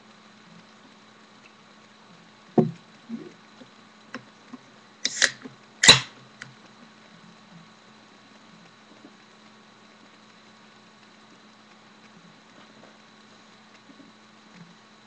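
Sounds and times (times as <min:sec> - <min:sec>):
sharp knocks: 0:02.6 - 0:02.8.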